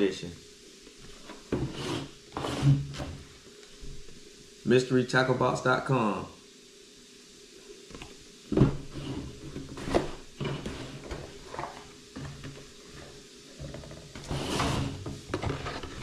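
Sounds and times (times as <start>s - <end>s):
cardboard scraping rustle: 8.6s - 16.0s.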